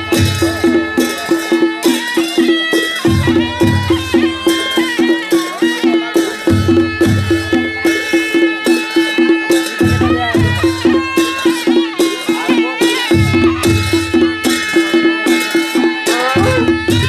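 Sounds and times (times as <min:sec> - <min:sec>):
shehnai melody: 0:00.0 - 0:17.0
steady drum beat: 0:00.0 - 0:17.0.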